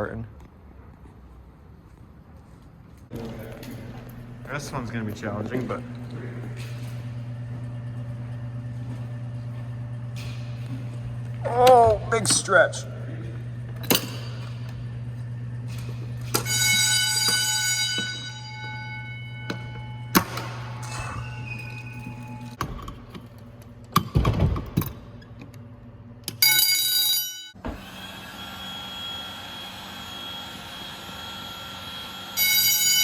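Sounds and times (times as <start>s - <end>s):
steady low hum: 0.0s - 26.5s
fire alarm bells ringing: 15.6s - 22.6s, 26.3s - 27.6s, 28.6s - 33.0s.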